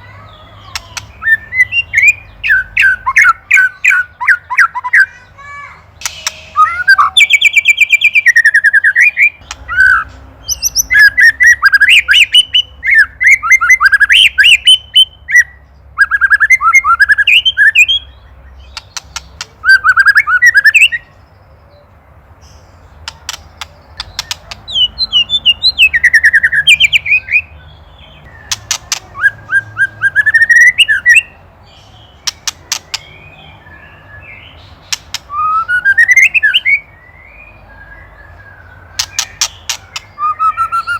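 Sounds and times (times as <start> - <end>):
bird chattering calls: 0.0 - 5.4, 6.0 - 21.2, 22.4 - 37.0, 38.1 - 40.9
dry bird rattles: 18.7 - 20.0, 23.0 - 24.9, 28.3 - 29.3, 32.2 - 33.2, 34.8 - 35.4, 38.9 - 40.1.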